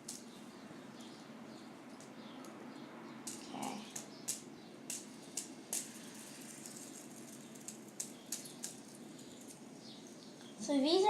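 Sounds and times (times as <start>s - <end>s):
faint steady hum: 0.0s - 11.0s
fidget spinner clicks and taps: 3.2s - 6.0s, 6.7s - 9.6s.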